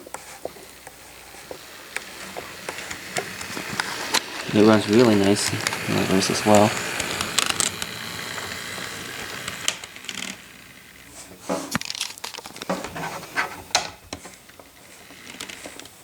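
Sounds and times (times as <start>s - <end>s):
scattered clicks and knocks: 0.0s - 10.5s
crinkling rustle: 0.0s - 16.0s
model locomotive motor running: 0.0s - 16.0s.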